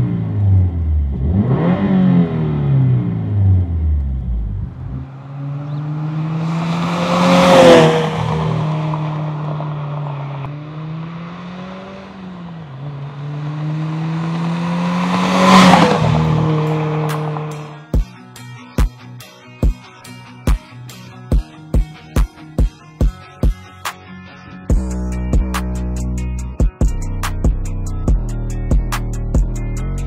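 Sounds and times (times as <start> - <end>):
car engine droning through exhaust: 0.0 - 18.0.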